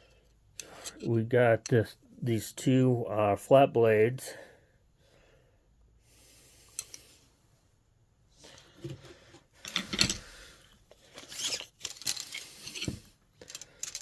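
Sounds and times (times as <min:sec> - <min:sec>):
screwdrivers clicking and knocking: 0:11.4 - 0:14.0.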